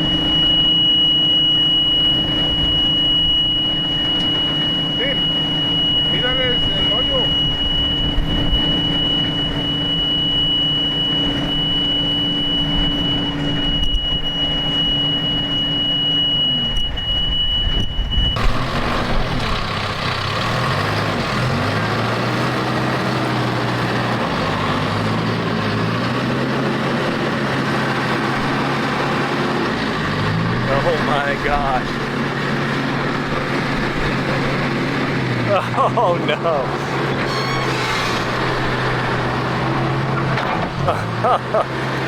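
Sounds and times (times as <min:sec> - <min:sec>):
heavy equipment engine revving: 0:00.0 - 0:15.8, 0:18.2 - 0:42.0
high steady whine: 0:00.0 - 0:20.4, 0:26.4 - 0:40.9.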